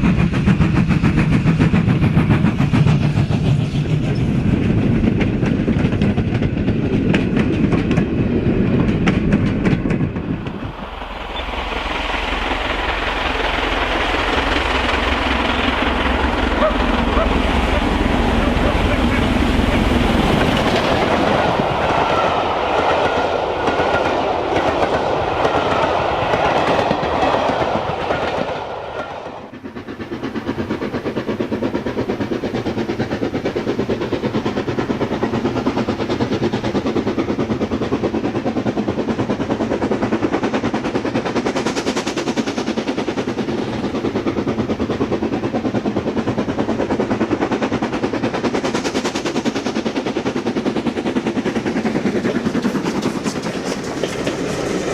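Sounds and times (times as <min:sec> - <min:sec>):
model train clattering on track: 0:00.0 - 0:03.5, 0:04.1 - 0:10.6, 0:23.0 - 0:54.9.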